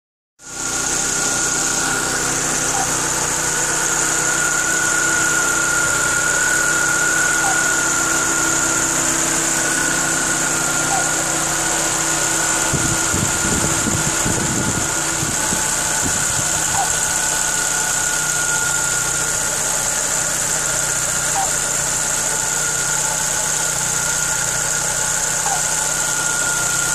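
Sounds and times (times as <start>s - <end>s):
car engine idling: 0.4s - 26.9s
high-pitched whine: 0.5s - 26.9s
low rumbling: 0.6s - 21.4s.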